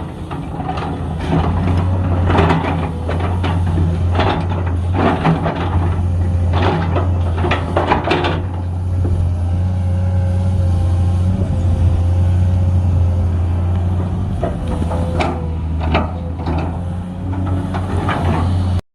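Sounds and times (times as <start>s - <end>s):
metallic clanks and scraping: 0.0s - 8.7s, 14.0s - 18.8s
excavator diesel engine running: 0.0s - 18.8s.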